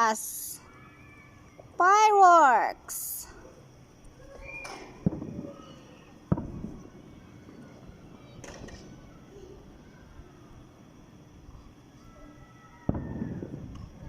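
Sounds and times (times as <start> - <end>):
fireworks crackle: 4.0 - 9.8, 12.9 - 14.0
distant fireworks bangs: 4.4 - 9.8, 12.8 - 14.0.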